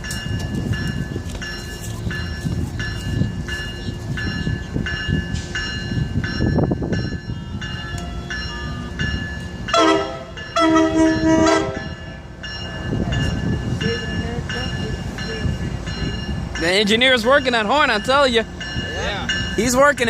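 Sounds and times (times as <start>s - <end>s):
bell ringing: 0.0s - 20.0s
train low rumble: 0.0s - 20.0s
train horn blasts: 9.7s - 12.0s.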